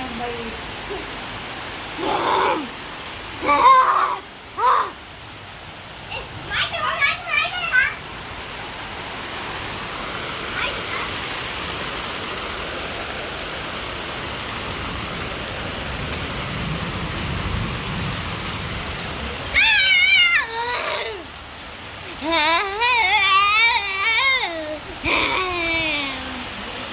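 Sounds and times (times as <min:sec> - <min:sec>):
steady rain falling: 0:00.0 - 0:26.9
child crying: 0:02.0 - 0:02.8, 0:03.4 - 0:05.0, 0:19.5 - 0:21.4, 0:22.0 - 0:26.7.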